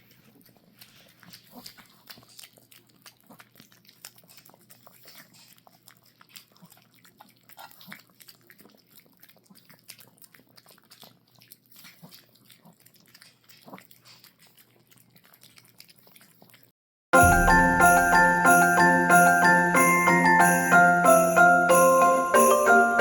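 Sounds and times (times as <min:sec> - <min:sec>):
dogs chewing and lip-smacking: 0:00.0 - 0:16.7.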